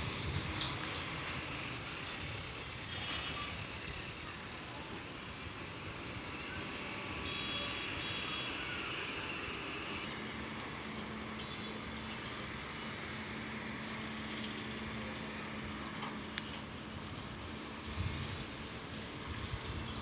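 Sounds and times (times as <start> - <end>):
outdoor background noise: 0.0 - 20.0.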